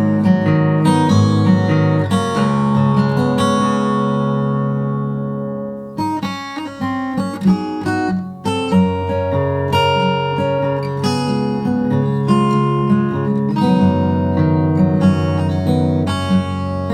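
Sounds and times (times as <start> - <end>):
acoustic guitar plucked and strummed: 0.0 - 16.9.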